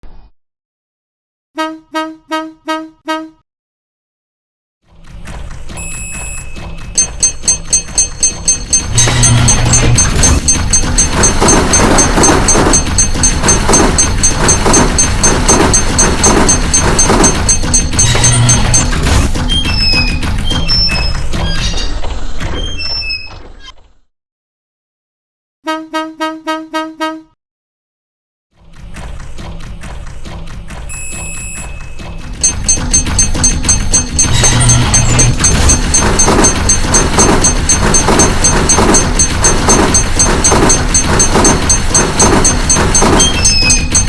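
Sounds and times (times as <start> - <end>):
short high ringing tones: 5.8 - 19.1, 30.9 - 44.0
rapid clattering knocks and thumps: 6.6 - 21.6, 28.6 - 30.9, 31.7 - 44.0
rapid high-pitched ticking: 7.0 - 19.1, 32.4 - 44.0
cartoon music: 7.0 - 19.2, 32.4 - 44.0.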